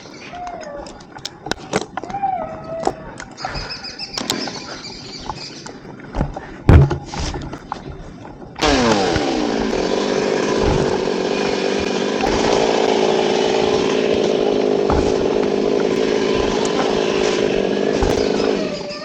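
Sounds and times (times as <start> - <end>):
chainsaw cutting wood: 8.6 - 19.0.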